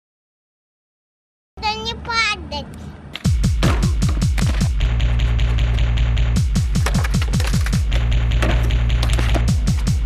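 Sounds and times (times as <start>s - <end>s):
high-pitched voice: 1.6s - 2.8s.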